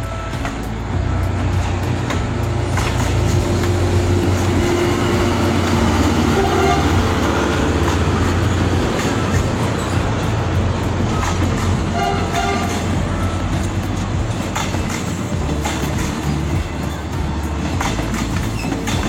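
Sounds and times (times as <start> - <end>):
held tone: 0.0 - 14.6
train rumbling past: 0.0 - 19.0.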